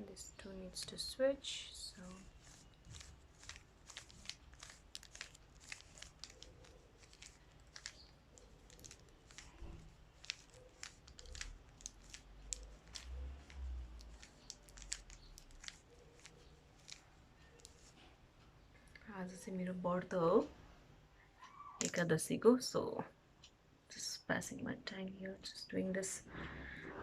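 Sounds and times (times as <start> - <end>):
puzzle cube plastic clicks: 2.5 - 17.0.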